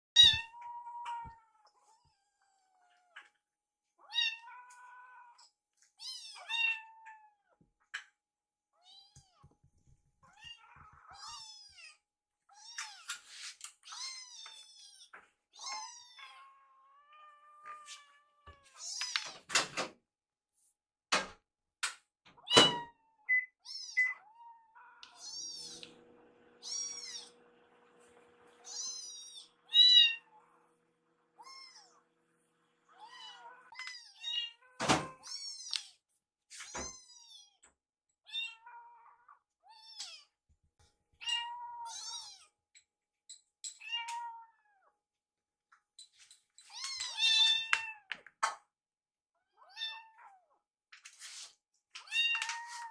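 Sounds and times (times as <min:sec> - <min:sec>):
kittens mewing: 0:26.6 - 0:27.5, 0:28.6 - 0:35.8.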